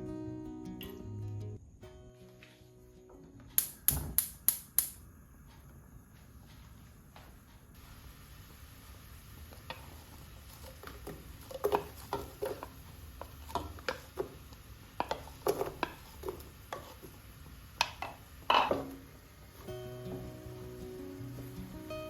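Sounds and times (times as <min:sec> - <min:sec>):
utensils clinking against pots: 0:17.8 - 0:19.1.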